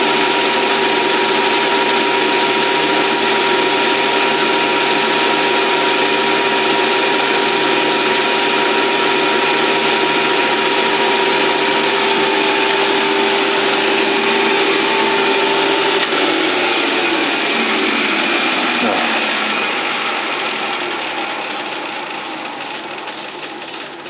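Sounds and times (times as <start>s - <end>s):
lathe mechanical whine: 0.0s - 24.0s
clattering gear noise: 20.7s - 24.0s.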